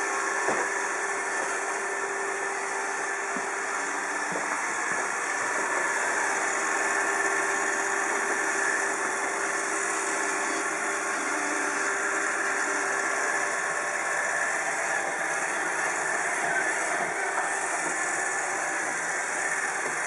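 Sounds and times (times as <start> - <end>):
robot vacuum whirring: 0.0 - 20.0.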